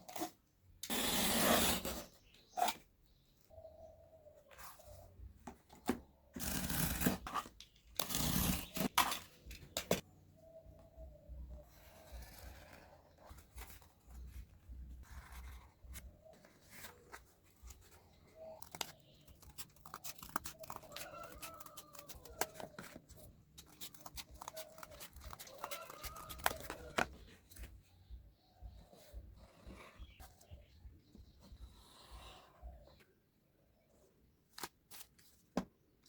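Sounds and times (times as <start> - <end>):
cardboard being cut and torn: 0.1 - 2.1, 6.4 - 9.2.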